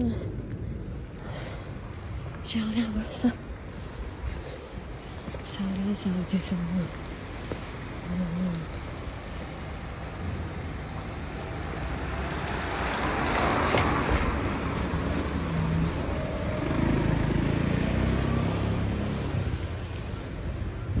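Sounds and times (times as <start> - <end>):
road traffic hum: 0.0 - 21.0
vehicle passing: 6.3 - 21.0.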